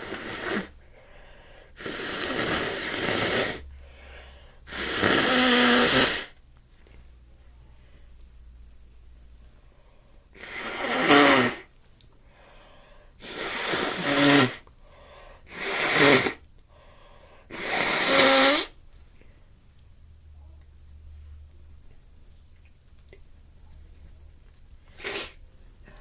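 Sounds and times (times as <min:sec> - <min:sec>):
person sneezing: 0:24.9 - 0:25.4.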